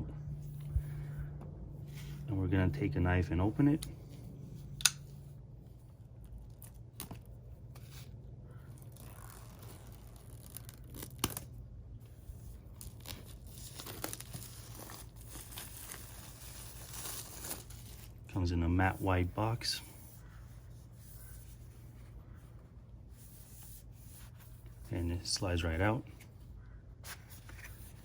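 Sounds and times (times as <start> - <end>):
plastic wrap tearing and rustling: 8.8 - 11.5, 12.7 - 18.3.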